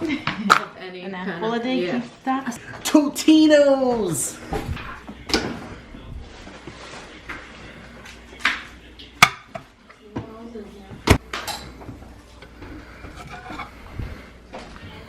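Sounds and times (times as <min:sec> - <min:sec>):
faint voices: 0:11.9 - 0:15.0.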